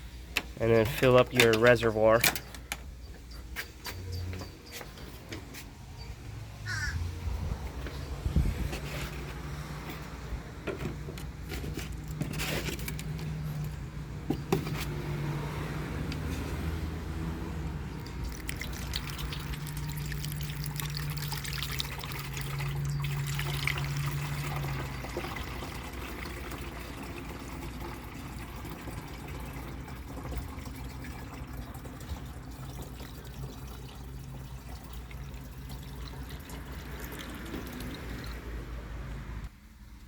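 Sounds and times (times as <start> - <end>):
fluid trickling pour: 17.2 - 38.6.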